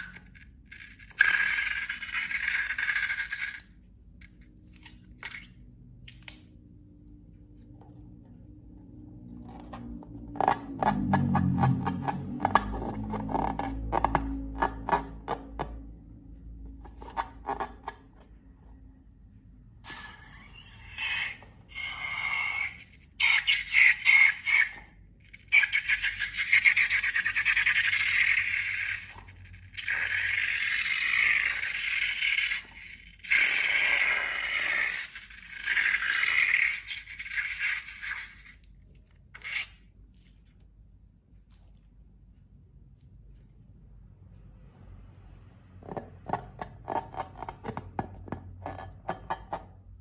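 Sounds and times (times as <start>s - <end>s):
balloon rubber squeaky scraping: 19.8s - 29.1s, 39.3s - 39.9s.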